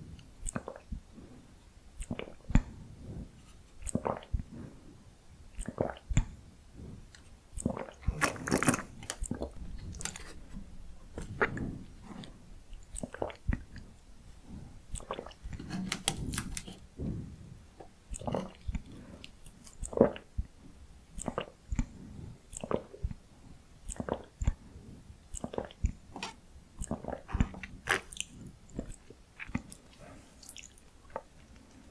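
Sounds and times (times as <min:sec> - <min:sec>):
chewing crunchy snacks: 0:07.6 - 0:10.4, 0:26.8 - 0:31.7.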